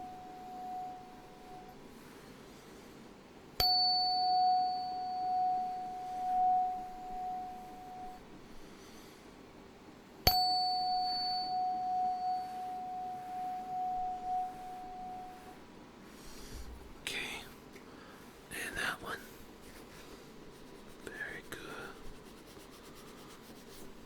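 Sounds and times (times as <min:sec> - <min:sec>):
tuning fork ringing: 0:00.0 - 0:01.8, 0:03.6 - 0:08.7, 0:10.2 - 0:15.8.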